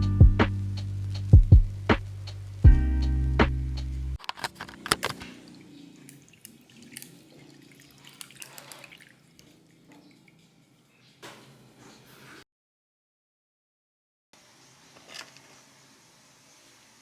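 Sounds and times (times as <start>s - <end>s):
music: 0.0s - 4.2s
faint hiss: 0.5s - 2.7s, 14.4s - 17.0s.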